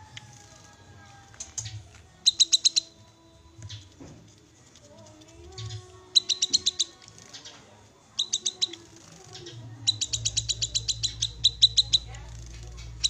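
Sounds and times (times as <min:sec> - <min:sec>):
soft bird twittering: 0:01.4 - 0:03.0, 0:05.5 - 0:13.0.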